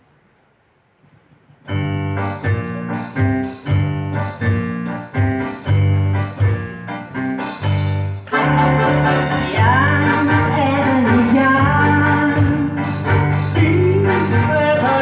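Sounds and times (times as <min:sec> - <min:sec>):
piano chords over bass: 0:01.7 - 0:15.0
person singing: 0:08.9 - 0:15.0.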